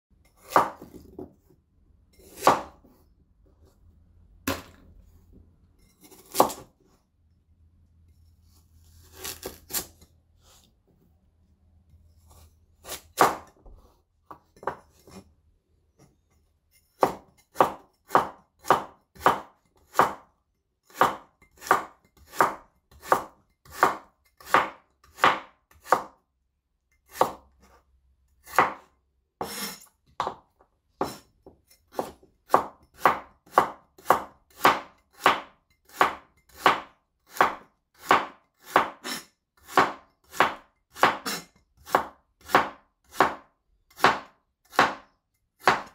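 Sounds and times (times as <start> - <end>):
knife chopping carrot on board: 0.4 - 1.4, 2.2 - 3.0, 6.1 - 6.7, 12.3 - 15.2, 17.0 - 20.3, 20.9 - 26.2, 27.1 - 27.8, 28.4 - 30.4, 31.0 - 45.9.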